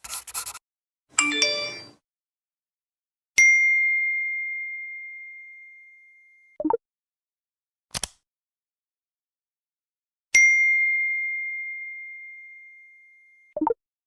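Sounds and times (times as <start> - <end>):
bell-like ding: 1.2 - 2.0, 3.4 - 6.4, 10.4 - 13.4.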